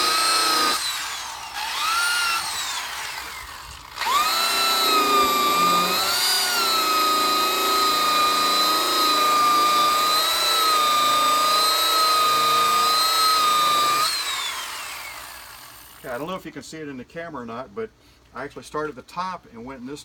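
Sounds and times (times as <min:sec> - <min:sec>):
power tool buffing pad whining: 0:00.0 - 0:16.0.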